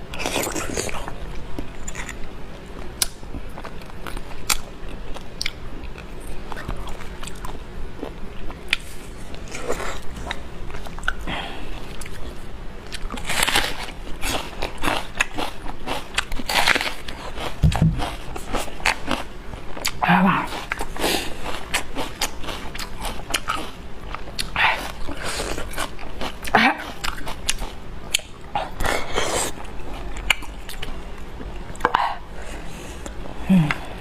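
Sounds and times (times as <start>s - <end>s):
chewing bone marrow: 12.9s - 32.0s.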